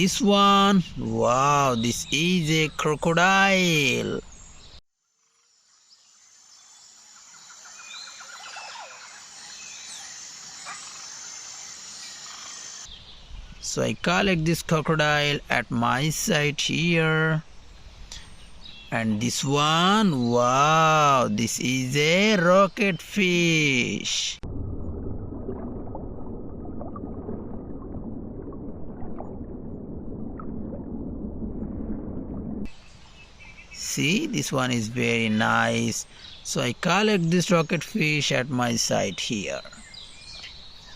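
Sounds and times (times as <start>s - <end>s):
birds chirping: 0.0s - 4.8s, 5.8s - 24.4s, 32.7s - 40.9s
steady high hiss: 5.7s - 13.0s
muffled watery sloshing: 24.4s - 33.6s.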